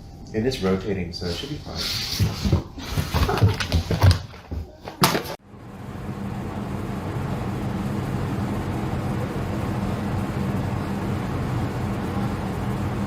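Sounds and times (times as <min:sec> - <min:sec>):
machine humming: 0:05.4 - 0:13.0.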